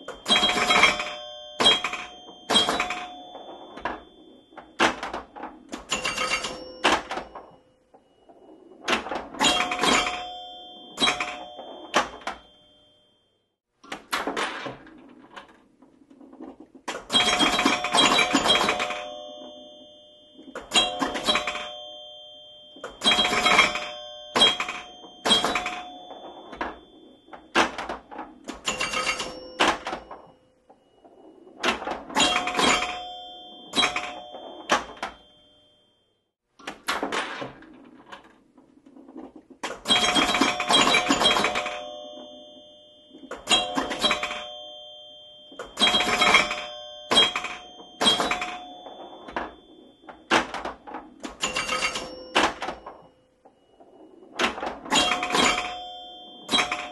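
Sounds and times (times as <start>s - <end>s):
pinball clacking hits: 0.0s - 12.8s, 13.9s - 35.6s, 36.6s - 56.9s
pinball bell tones: 0.0s - 56.9s.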